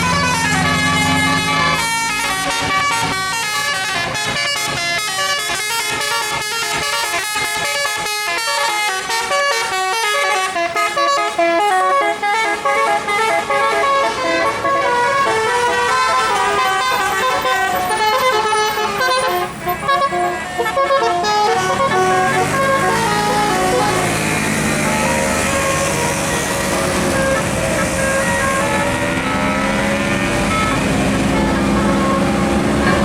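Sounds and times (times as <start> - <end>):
bus engine revving: 0.0 - 33.0
musical air horn tune: 0.0 - 33.0.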